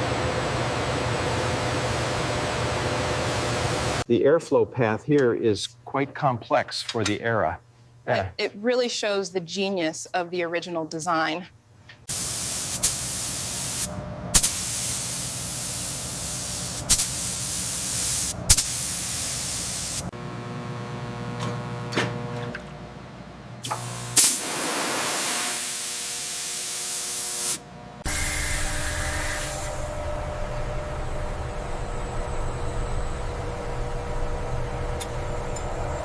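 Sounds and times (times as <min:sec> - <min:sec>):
steady hum: 0:11.6 - 0:36.0
hissing spray: 0:12.1 - 0:20.1, 0:23.7 - 0:30.0.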